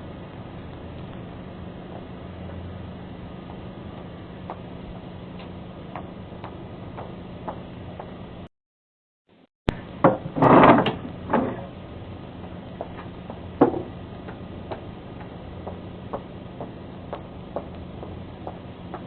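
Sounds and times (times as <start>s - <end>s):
knocks and scuffs on porch: 3.4s - 8.2s, 12.4s - 19.0s.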